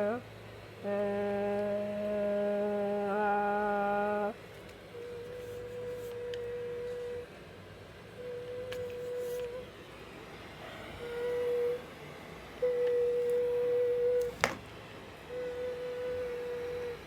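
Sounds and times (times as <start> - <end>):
person humming a steady note: 0.0 - 9.8, 10.5 - 17.0
higher steady tone: 10.6 - 14.4.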